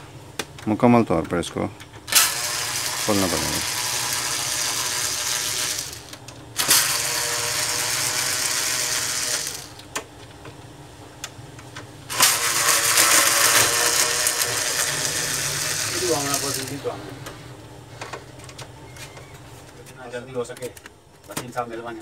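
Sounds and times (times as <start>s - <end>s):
mechanical whirring and rattling: 2.0s - 9.9s, 12.1s - 19.4s.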